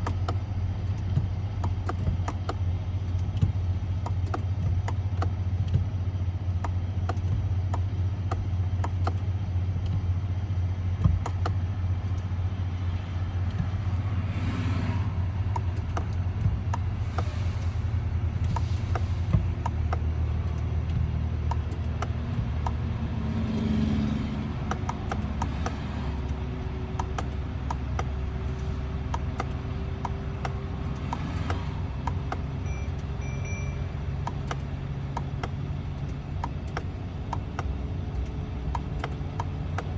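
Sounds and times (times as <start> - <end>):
vehicle engine rumbling: 0.0 - 39.9
faint ticks: 18.4 - 39.9.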